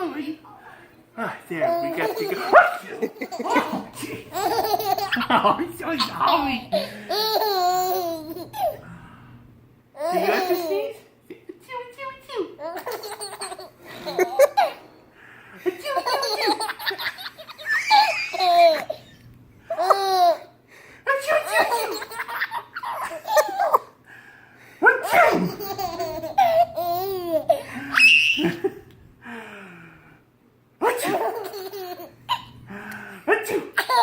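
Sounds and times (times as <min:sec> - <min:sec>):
baby laughing and giggling: 0:01.6 - 0:08.8, 0:10.0 - 0:10.9, 0:12.6 - 0:14.8, 0:15.8 - 0:20.5, 0:21.3 - 0:23.9, 0:25.0 - 0:28.7, 0:31.0 - 0:32.6, 0:33.8 - 0:34.0.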